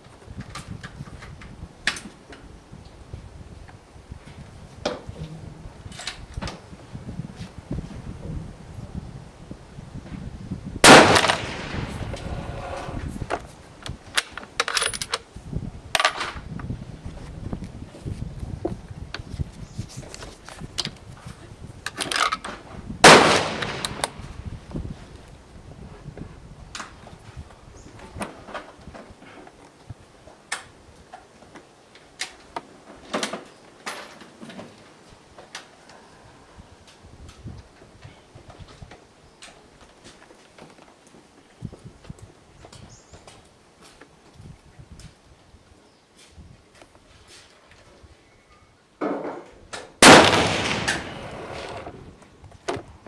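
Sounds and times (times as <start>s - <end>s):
rifle shot with echo: 10.8s - 12.2s, 23.0s - 24.2s, 50.0s - 51.8s.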